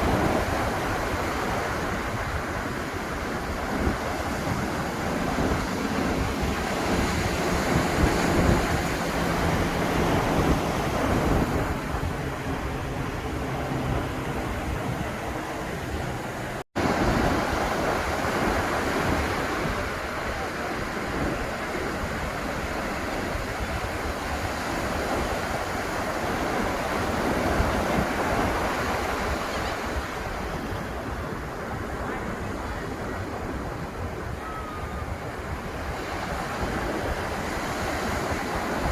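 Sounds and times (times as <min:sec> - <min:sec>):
ocean surf on beach: 0:00.0 - 0:38.9
wind buffeting microphone: 0:00.0 - 0:38.9.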